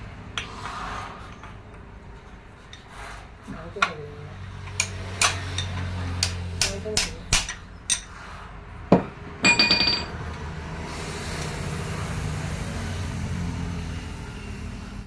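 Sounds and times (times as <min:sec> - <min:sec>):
metal tools knocking on engine: 0:08.9 - 0:10.2
ringing metal clank: 0:09.4 - 0:10.1.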